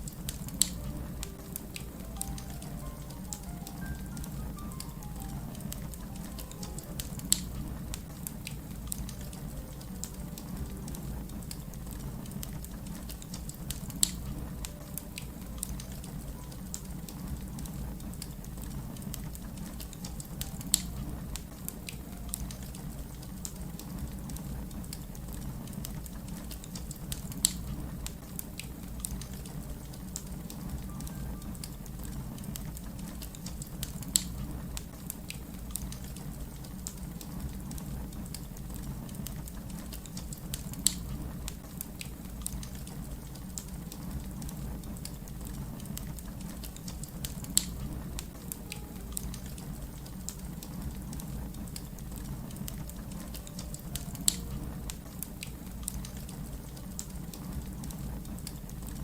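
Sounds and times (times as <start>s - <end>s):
wood fire crackling: 0.0s - 59.0s
low rumble: 0.2s - 16.5s.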